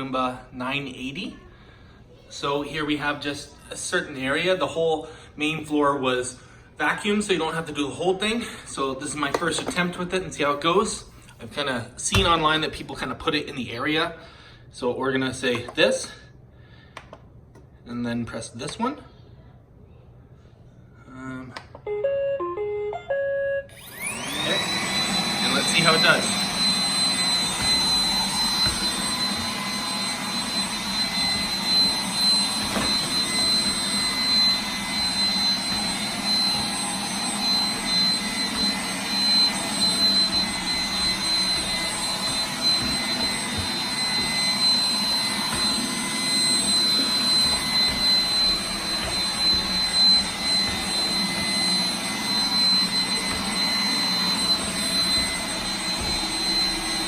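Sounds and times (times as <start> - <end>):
robot vacuum whirring: 23.7 - 57.0.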